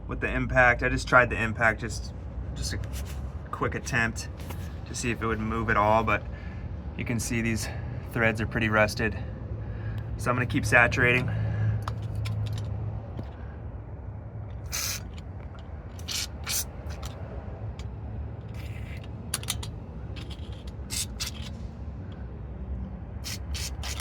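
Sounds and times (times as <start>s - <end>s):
aerosol can spraying in hissing bursts: 14.7s - 15.2s, 16.0s - 17.1s, 20.2s - 21.5s, 23.2s - 24.0s.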